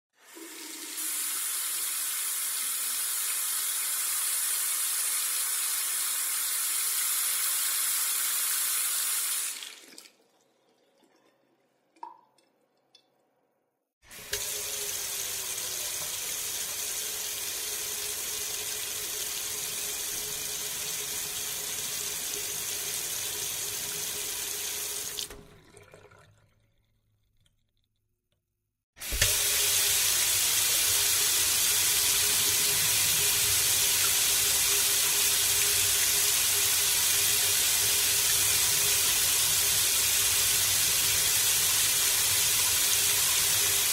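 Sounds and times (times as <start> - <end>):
water running from a tap: 0.2 - 10.3, 14.1 - 26.5, 29.0 - 43.9
water drip: 9.6 - 13.4.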